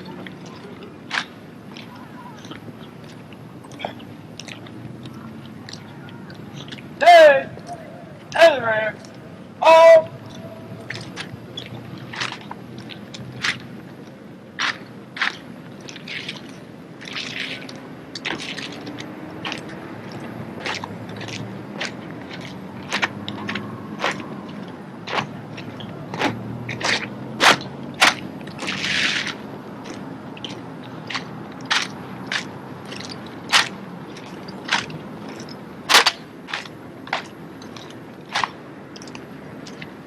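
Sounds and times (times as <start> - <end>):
low steady hum: 0.0 - 40.0
rifles slapping and clacking: 25.1 - 40.0.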